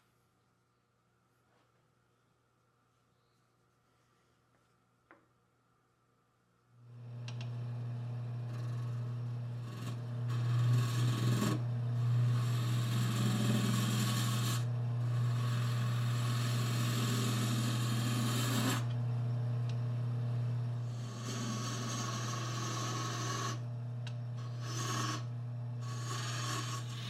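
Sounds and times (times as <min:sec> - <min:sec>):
wood lathe humming: 0:06.9 - 0:27.0
rasping on spinning wood: 0:08.3 - 0:18.9, 0:20.8 - 0:23.6, 0:24.4 - 0:27.0.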